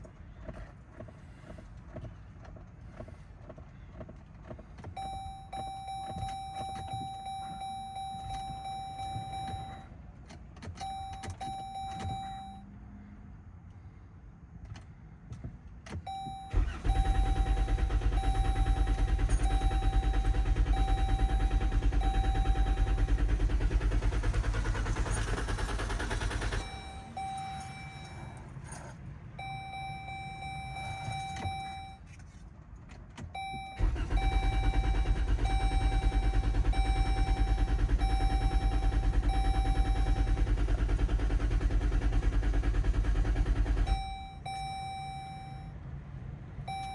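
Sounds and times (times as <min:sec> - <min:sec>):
car engine cranking: 0:00.4 - 0:12.6, 0:15.9 - 0:45.7
dashboard warning chime beeping: 0:05.0 - 0:10.1, 0:10.8 - 0:12.7, 0:16.1 - 0:32.2, 0:33.4 - 0:42.6, 0:43.2 - 0:45.8, 0:46.7 - 0:46.9.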